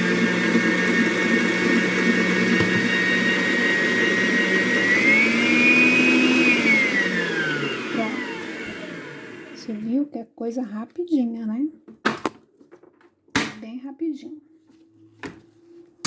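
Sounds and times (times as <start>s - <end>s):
electric mixer whining: 0.0s - 9.8s.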